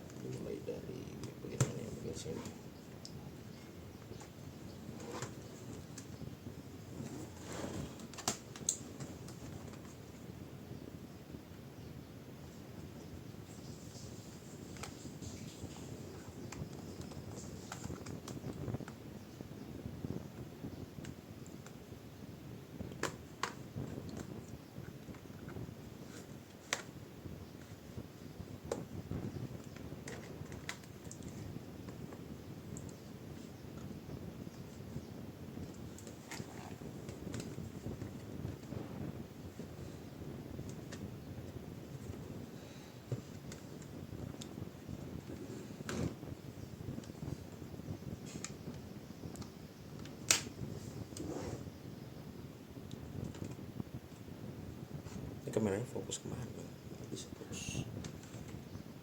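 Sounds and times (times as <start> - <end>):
rustle of handling plastic: 12.5 - 19.2.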